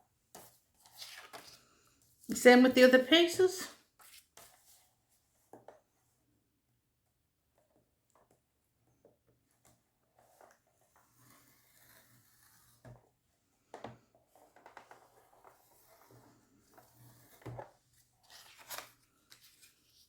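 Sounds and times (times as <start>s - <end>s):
scoring tool scraping card: 10.9s - 12.9s.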